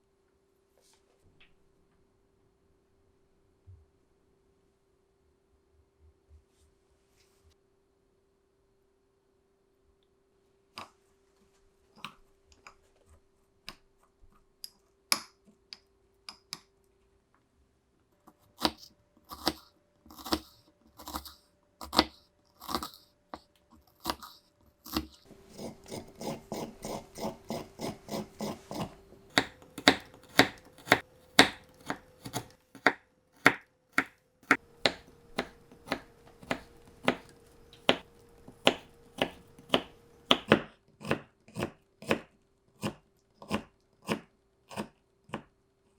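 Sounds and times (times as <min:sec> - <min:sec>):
knife chopping on cutting board: 0:18.6 - 0:23.0, 0:24.9 - 0:45.5.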